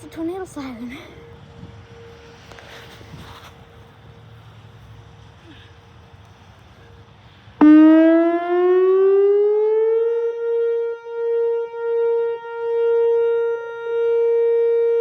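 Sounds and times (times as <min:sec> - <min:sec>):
tornado warning siren wailing: 0:06.8 - 0:15.0.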